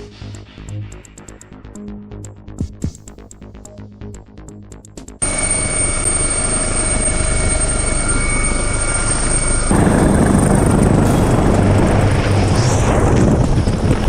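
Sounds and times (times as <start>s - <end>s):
helicopter rotor and engine noise: 5.2s - 14.0s
high turbine whine: 5.2s - 14.0s.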